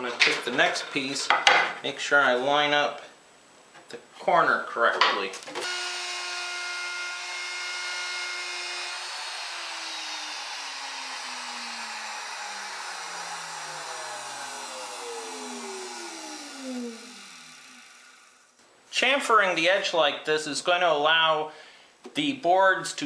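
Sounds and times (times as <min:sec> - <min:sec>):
router whining and winding down: 0:05.6 - 0:18.6.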